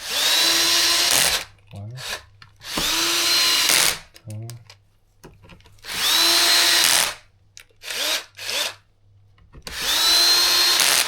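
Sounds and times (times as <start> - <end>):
power drill whining: 0.0 - 4.1, 5.8 - 7.2, 7.8 - 8.8, 9.6 - 11.0.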